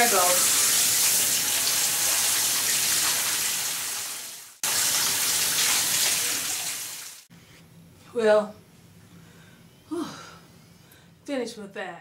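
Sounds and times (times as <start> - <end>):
shower head spraying water: 0.0 - 7.3.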